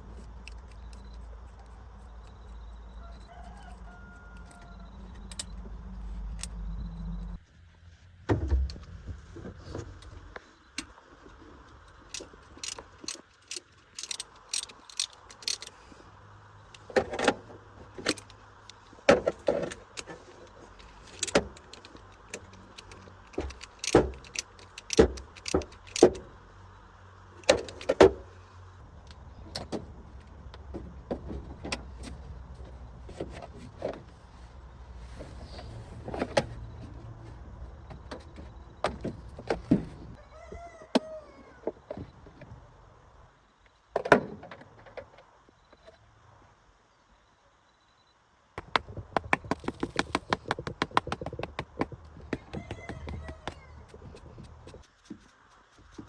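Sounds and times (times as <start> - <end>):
metal tools clinking and knocking: 12.1 - 15.8.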